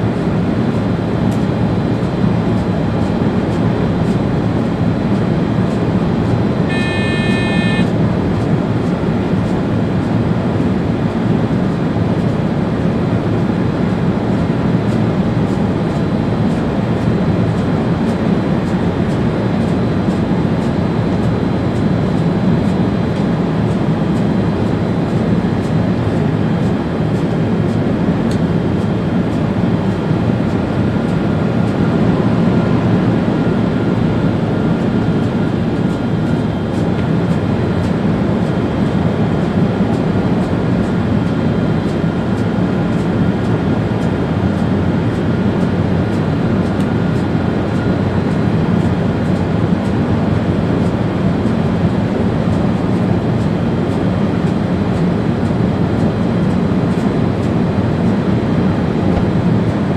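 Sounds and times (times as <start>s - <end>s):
train running rumble: 0.0s - 59.9s
high electronic beep: 6.7s - 7.9s.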